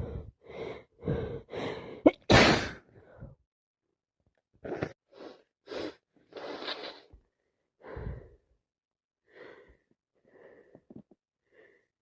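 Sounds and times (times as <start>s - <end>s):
person gasping and breathing noisily: 0.0s - 3.4s, 7.8s - 8.4s.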